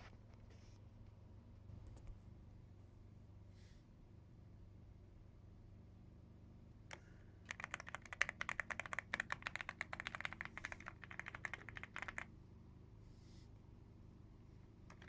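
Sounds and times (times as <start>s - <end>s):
mechanical keyboard typing: 6.9s - 12.3s.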